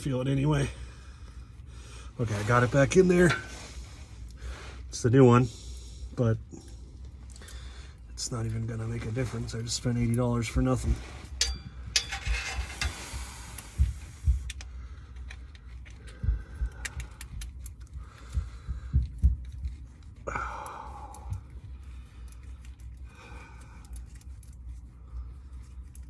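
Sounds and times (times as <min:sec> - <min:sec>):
metallic clicks and clinks: 0:11.4 - 0:12.9.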